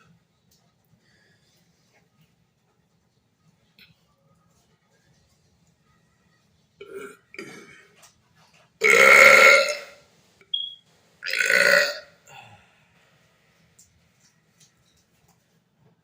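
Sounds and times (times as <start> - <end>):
man belching: 8.8 - 9.9, 11.2 - 12.1.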